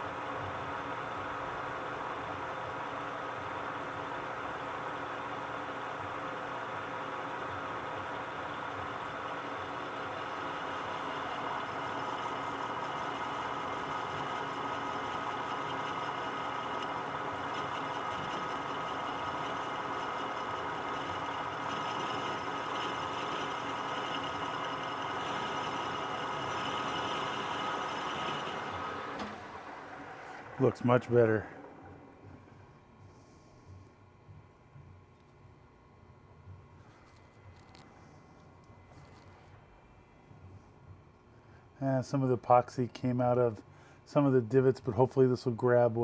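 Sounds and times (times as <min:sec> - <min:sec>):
metal lathe whining: 0:09.0 - 0:32.1.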